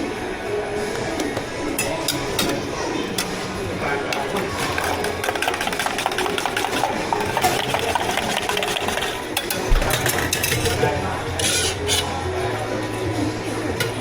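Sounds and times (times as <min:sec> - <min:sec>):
fast clattering: 0:04.1 - 0:10.9.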